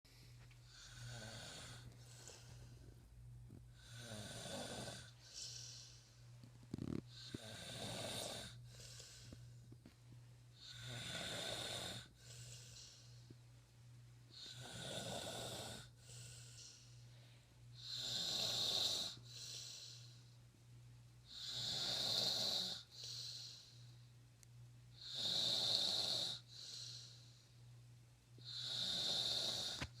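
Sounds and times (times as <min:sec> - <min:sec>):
woman snoring: 0:00.7 - 0:02.5, 0:03.8 - 0:06.0, 0:06.7 - 0:09.4, 0:10.6 - 0:13.0, 0:14.3 - 0:16.7, 0:17.8 - 0:20.0, 0:21.3 - 0:23.6, 0:25.0 - 0:27.1, 0:28.4 - 0:30.0.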